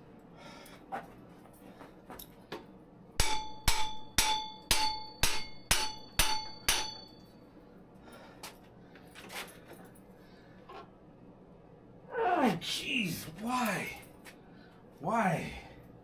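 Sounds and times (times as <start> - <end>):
hammer striking metal with ring: 3.2 - 7.3.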